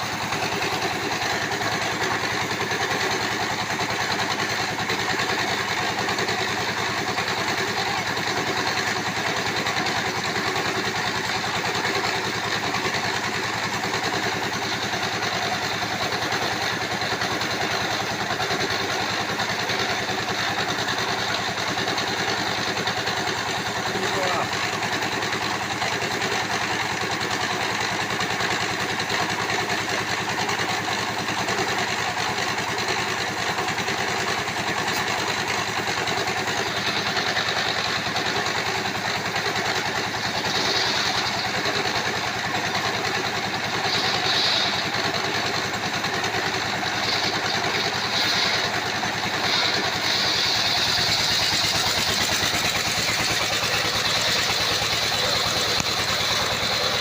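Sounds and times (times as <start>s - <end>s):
sawmill running: 0.0s - 57.0s
higher-pitched whine: 43.6s - 45.2s, 46.7s - 57.0s.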